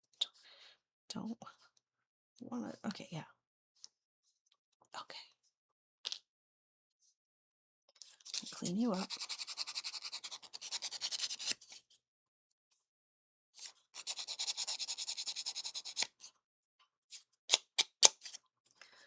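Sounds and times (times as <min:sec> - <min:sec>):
file scraping back and forth: 0:08.4 - 0:11.8, 0:13.6 - 0:16.3.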